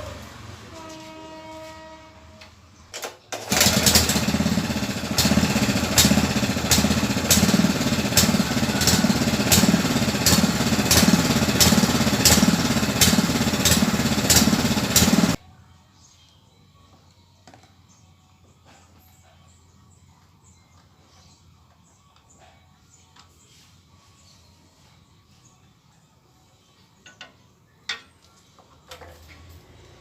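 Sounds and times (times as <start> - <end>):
small engine running: 3.4 - 15.4.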